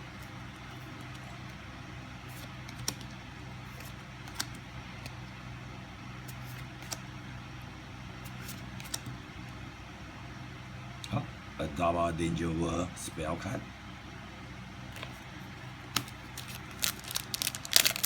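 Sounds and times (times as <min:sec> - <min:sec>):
low room hum: 0:00.0 - 0:18.0
cards flipping and snapping: 0:02.3 - 0:03.1, 0:03.7 - 0:05.2, 0:06.3 - 0:07.0, 0:08.3 - 0:09.2, 0:15.9 - 0:18.0.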